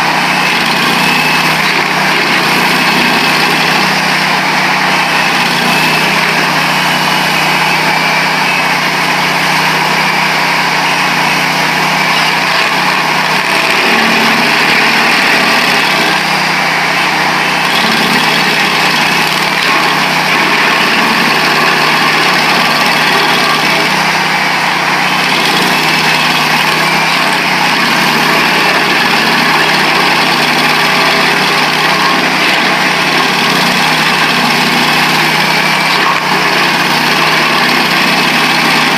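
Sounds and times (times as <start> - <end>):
cutter wheel grinding a stump: 0.0 - 38.9
stump grinder engine running: 0.0 - 38.9.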